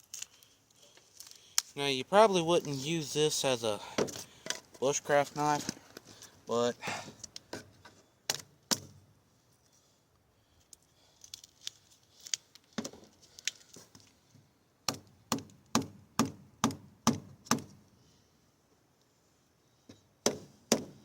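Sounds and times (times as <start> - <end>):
knife chopping into wood: 20.2 - 21.0.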